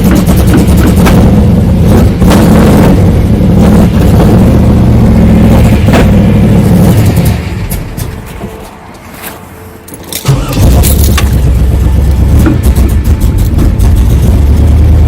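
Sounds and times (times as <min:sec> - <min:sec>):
car engine running loud: 0:00.0 - 0:08.6, 0:10.2 - 0:15.0.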